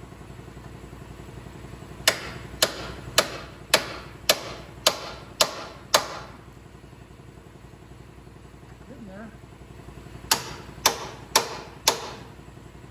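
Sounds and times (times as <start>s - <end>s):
hammer striking steel: 2.1s - 6.4s, 10.3s - 12.3s.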